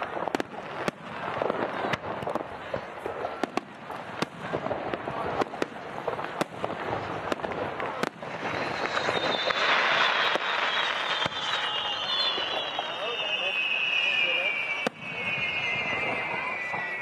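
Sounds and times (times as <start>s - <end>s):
fireworks bangs and cracks: 0.0s - 17.0s
crackling hiss: 3.6s - 17.0s
rushing noise with whistling: 8.1s - 17.0s.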